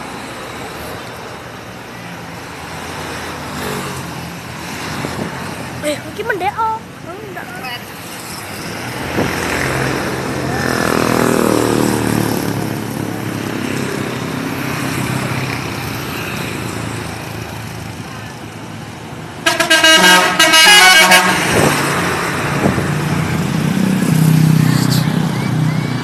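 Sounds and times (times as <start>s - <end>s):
bus engine running: 0.0s - 26.0s
road traffic: 0.0s - 26.0s
multi-tone musical bus horn: 19.4s - 21.7s.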